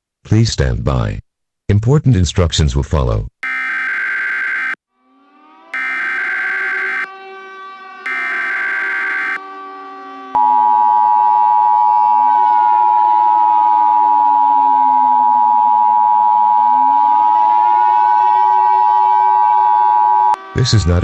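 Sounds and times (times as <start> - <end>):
screeching data burst: 3.4 - 4.8, 5.8 - 7.1, 8.1 - 9.4
siren wailing: 3.4 - 4.8, 5.8 - 7.1, 8.1 - 9.4
two-tone attention signal: 3.4 - 4.8, 5.8 - 7.1, 8.1 - 9.4.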